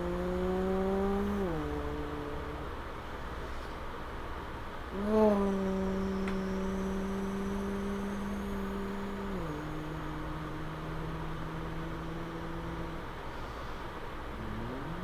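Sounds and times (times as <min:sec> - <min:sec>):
person humming engine imitation: 0:00.0 - 0:02.8, 0:04.9 - 0:13.2, 0:14.3 - 0:15.0.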